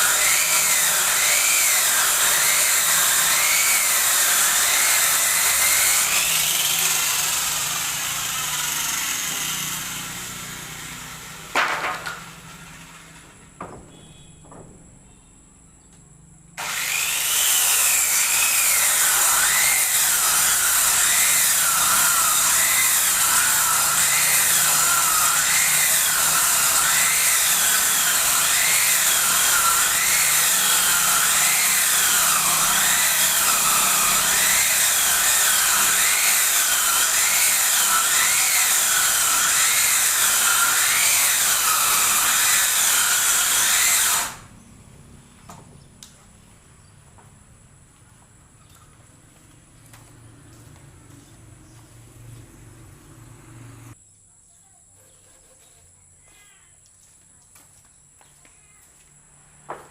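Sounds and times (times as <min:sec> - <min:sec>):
circular saw ripping wood: 0:00.0 - 0:14.2, 0:16.6 - 0:44.5.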